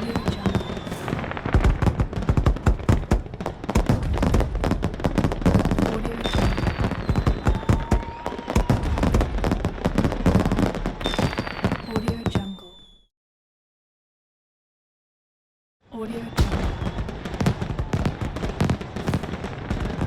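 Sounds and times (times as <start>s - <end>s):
rocket falling whistle: 0.0s - 1.5s, 6.2s - 9.4s, 11.0s - 13.1s, 16.3s - 18.3s
fireworks bangs and crackling: 0.0s - 12.9s, 16.2s - 20.0s.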